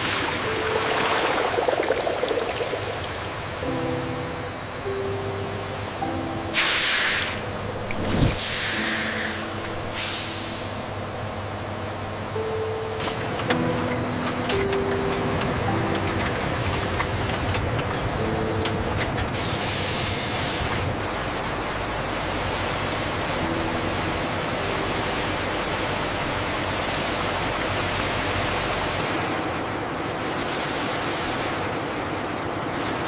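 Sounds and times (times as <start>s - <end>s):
factory machinery rushing: 0.0s - 33.0s
bright hiss: 6.5s - 7.4s, 8.3s - 10.8s.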